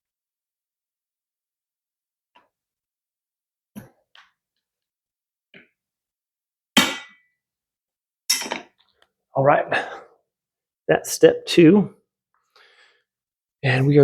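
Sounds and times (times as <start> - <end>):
metallic clank ringing: 8.3 - 8.6.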